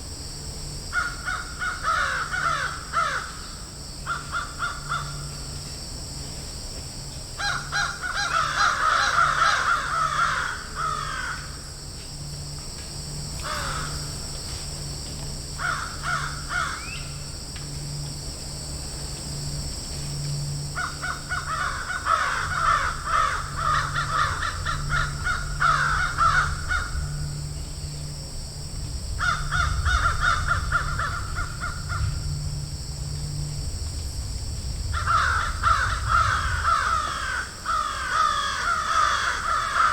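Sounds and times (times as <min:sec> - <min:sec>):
steady high-pitched hiss: 0:00.0 - 0:39.9
crows cawing: 0:00.9 - 0:05.3, 0:07.4 - 0:11.6, 0:13.4 - 0:14.2, 0:15.6 - 0:17.0, 0:20.8 - 0:27.3, 0:29.2 - 0:32.2, 0:35.0 - 0:39.9.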